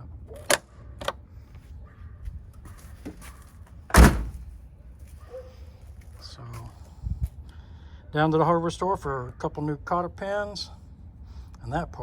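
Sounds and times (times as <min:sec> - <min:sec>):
hood latch clicks: 0:00.3 - 0:01.2
heavy hood clunk: 0:03.9 - 0:04.5.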